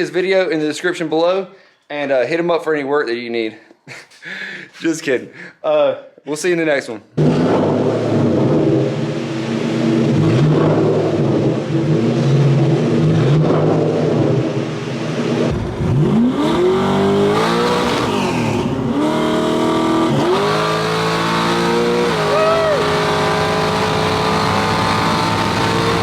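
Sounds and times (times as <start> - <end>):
car engine revving: 7.2 - 26.0.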